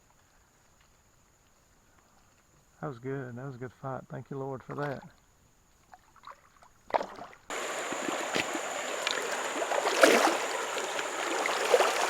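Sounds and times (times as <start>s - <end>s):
river water rushing over rocks: 7.5s - 12.0s.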